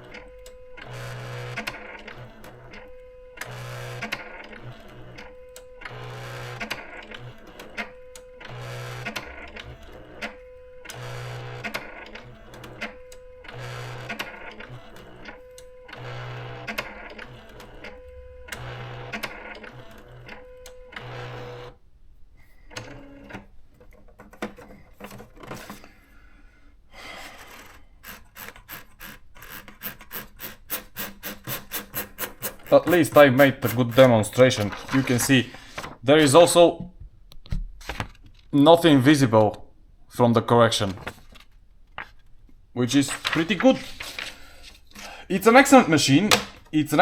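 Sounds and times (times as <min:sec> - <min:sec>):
typewriter motor and print head hum: 0:00.0 - 0:21.8, 0:22.7 - 0:23.6, 0:27.4 - 0:36.3.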